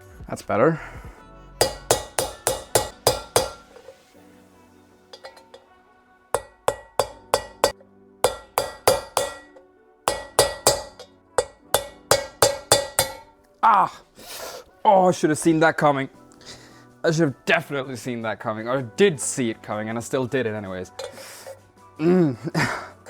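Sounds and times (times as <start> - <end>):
hammer striking metal: 1.6 - 4.1, 5.2 - 5.7, 6.4 - 13.4, 21.0 - 21.6.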